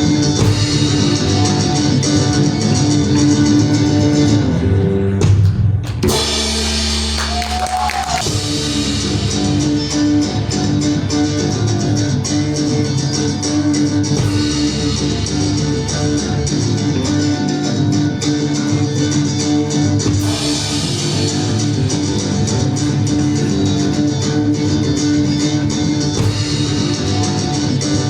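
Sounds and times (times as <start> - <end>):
guitar-led music with bass: 0.0 - 28.0.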